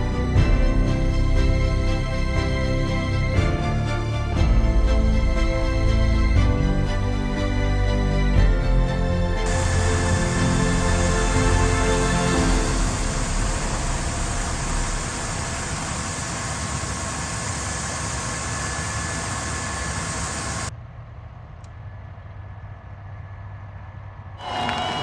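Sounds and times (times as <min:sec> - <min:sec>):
vehicle engine running: 0:09.3 - 0:20.7
loud even hiss: 0:09.4 - 0:20.7.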